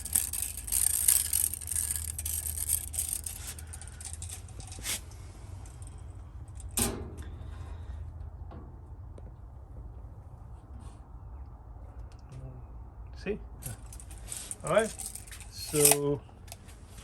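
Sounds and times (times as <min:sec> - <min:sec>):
scraping and rattling handling noises: 0:00.0 - 0:07.4, 0:13.6 - 0:17.0
steady low hum: 0:00.0 - 0:17.0.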